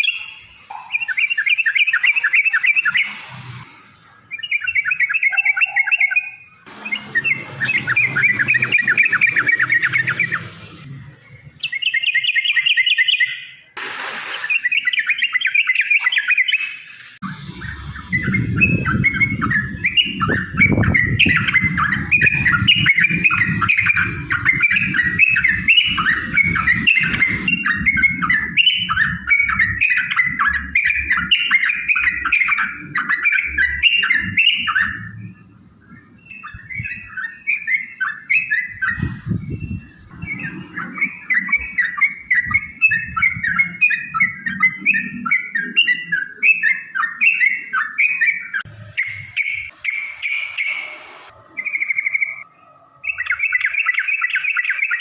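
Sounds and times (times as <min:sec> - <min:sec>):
bird chattering song: 0:00.0 - 0:55.0
low rumble: 0:17.2 - 0:29.8.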